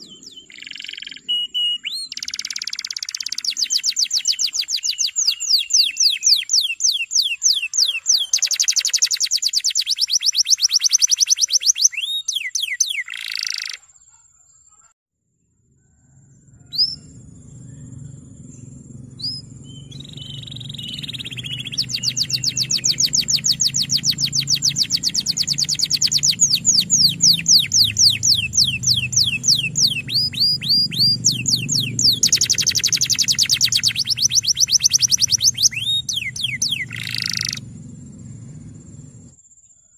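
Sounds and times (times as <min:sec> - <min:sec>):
canary singing trills: 0:00.0 - 0:14.9, 0:16.0 - 0:39.4
low background hum: 0:15.9 - 0:39.4.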